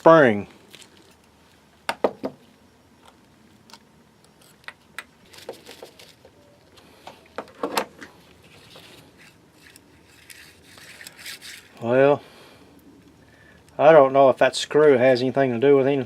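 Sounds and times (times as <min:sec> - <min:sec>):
key-chain reel clicking: 0:09.6 - 0:11.8.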